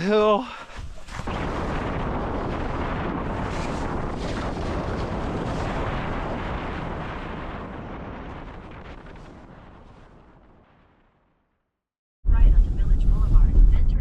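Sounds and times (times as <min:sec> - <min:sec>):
wind buffeting microphone: 0:00.6 - 0:10.2.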